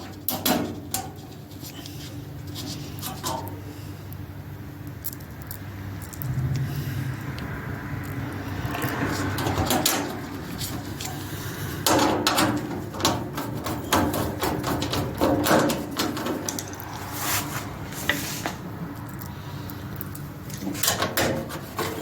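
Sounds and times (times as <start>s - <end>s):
metal panels knocking and clunking: 0.0s - 1.6s, 9.1s - 16.8s, 20.5s - 22.0s.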